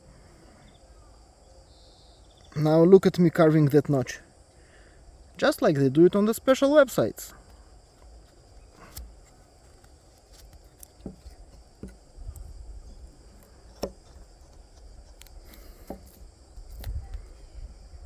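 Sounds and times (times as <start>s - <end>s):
knife cutting into wood: 8.0s - 17.0s.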